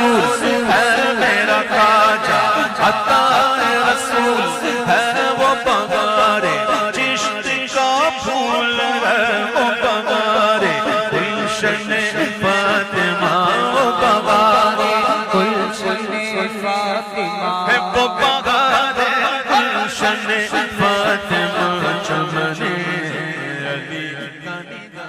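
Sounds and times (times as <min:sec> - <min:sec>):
devotional song with ornamented melody: 0:00.0 - 0:25.0.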